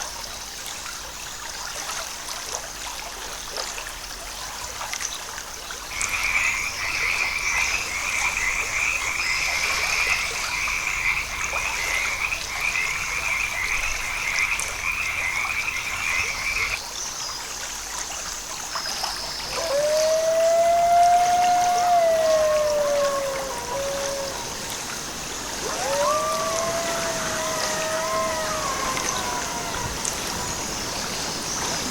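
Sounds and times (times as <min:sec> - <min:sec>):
high-pitched animal chorus: 0:25.6 - 0:30.9.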